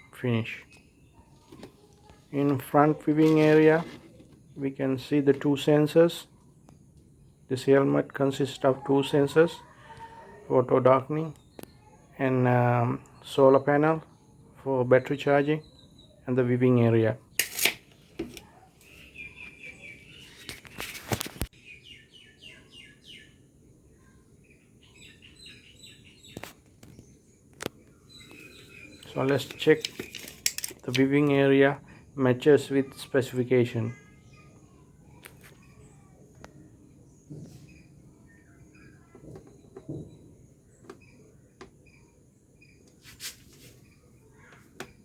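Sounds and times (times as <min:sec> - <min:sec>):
bird chirping: 0:00.0 - 0:45.0
scraping: 0:17.4 - 0:19.0
handling clicks and knocks: 0:26.4 - 0:31.4.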